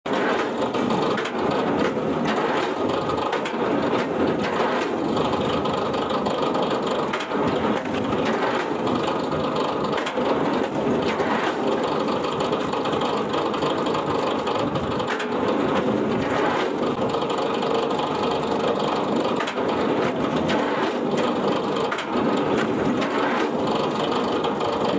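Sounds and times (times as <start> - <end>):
firewood machinery running: 0.1 - 24.9.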